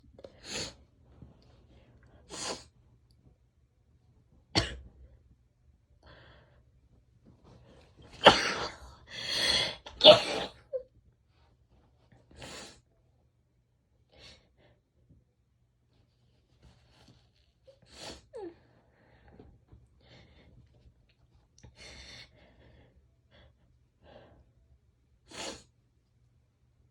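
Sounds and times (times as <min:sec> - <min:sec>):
woman sneezing and coughing: 0:04.6 - 0:04.9, 0:08.2 - 0:10.8.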